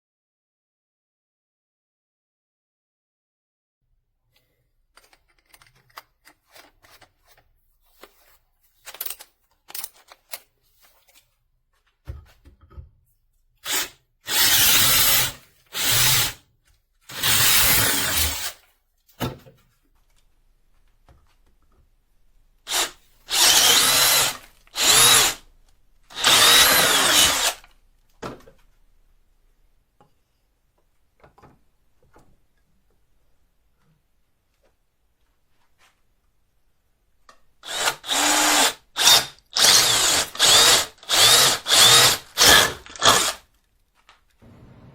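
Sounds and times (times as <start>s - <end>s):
power drill boring into wood: 13.7s - 16.4s, 17.1s - 18.6s, 22.7s - 25.4s, 26.1s - 27.6s, 37.6s - 43.4s.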